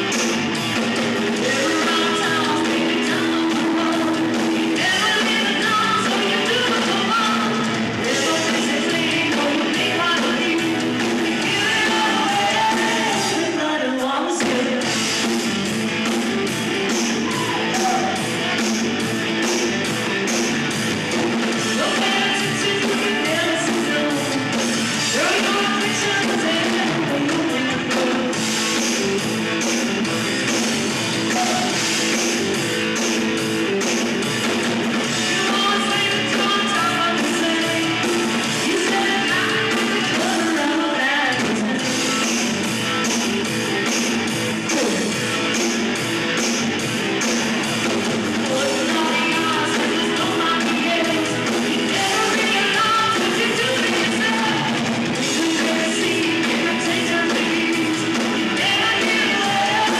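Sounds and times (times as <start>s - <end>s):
rock band playing live: 0.0s - 59.9s
person singing: 1.4s - 15.0s, 21.6s - 28.4s, 35.0s - 42.4s, 48.4s - 59.9s.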